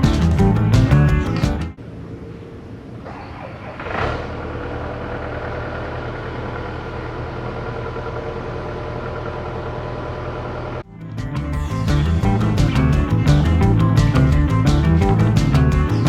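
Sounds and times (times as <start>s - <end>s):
machine engine running: 3.4s - 10.8s.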